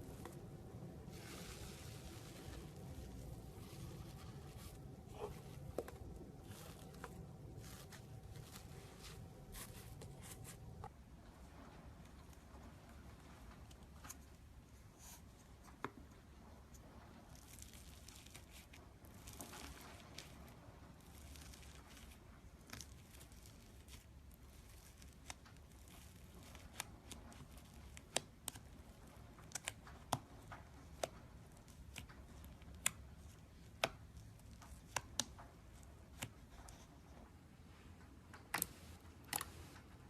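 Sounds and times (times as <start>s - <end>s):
slime sticky rustling: 0.0s - 10.9s, 17.3s - 37.0s.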